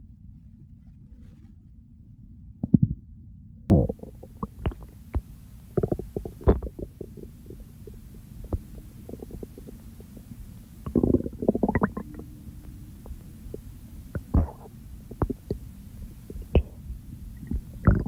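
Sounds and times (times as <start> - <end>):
stomach gurgling: 3.7 - 18.0.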